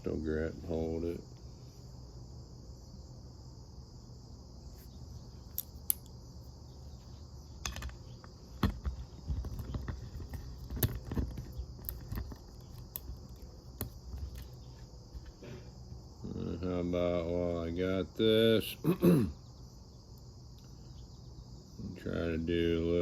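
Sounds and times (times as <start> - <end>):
crickets trilling: 0.0 - 23.0.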